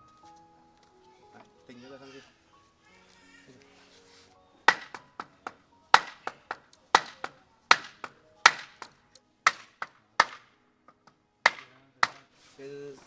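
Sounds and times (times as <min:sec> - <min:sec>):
hammer striking nails into wood: 0:04.7 - 0:12.4.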